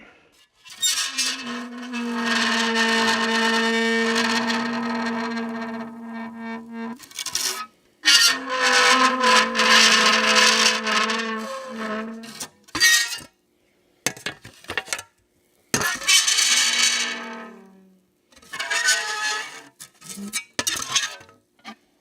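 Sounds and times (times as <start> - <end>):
metal plate screeching on dry ice: 0.6 - 13.2, 15.8 - 17.7, 18.5 - 21.2.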